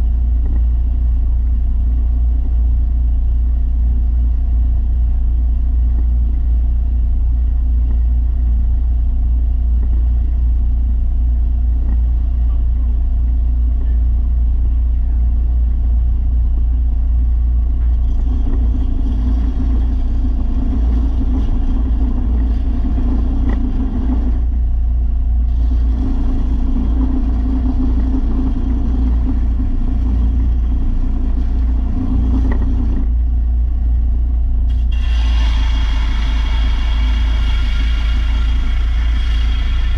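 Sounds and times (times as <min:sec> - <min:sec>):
belt sander motor hum: 0:17.8 - 0:24.6, 0:25.4 - 0:33.2, 0:34.7 - 0:39.9
steel blade grinding on sander belt: 0:18.0 - 0:24.5, 0:25.5 - 0:33.1, 0:34.7 - 0:39.9.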